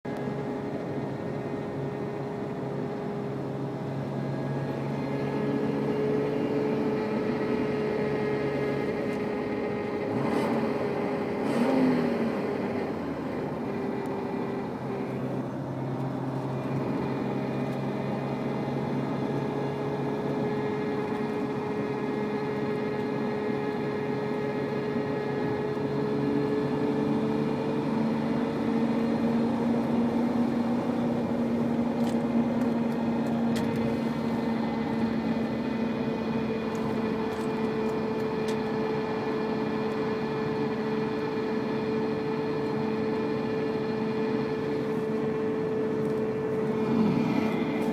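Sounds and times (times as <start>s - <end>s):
car engine humming and whining: 0.1s - 47.9s.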